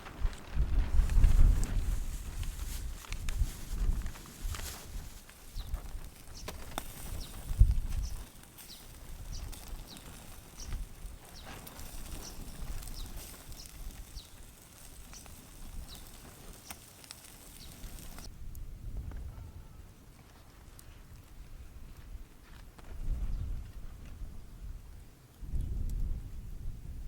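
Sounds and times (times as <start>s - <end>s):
campfire crackling and popping: 0.0s - 19.1s.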